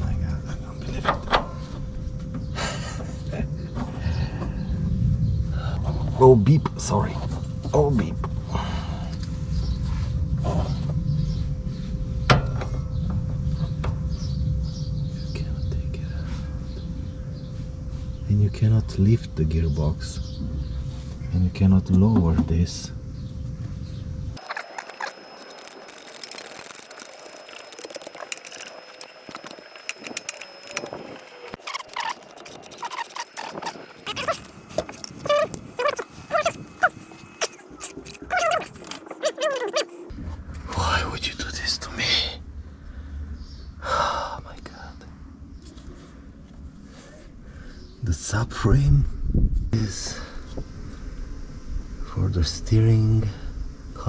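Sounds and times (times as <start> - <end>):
steady low rumble: 0.0 - 24.4, 44.4 - 54.0
faint high whine: 0.0 - 43.3, 49.8 - 54.0
hand tools clicking and clinking: 24.4 - 40.1.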